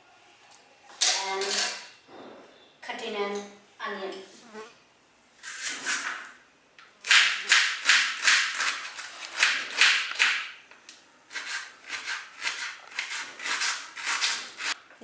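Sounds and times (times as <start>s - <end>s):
knife chopping onion: 7.0s - 10.4s, 11.3s - 14.8s.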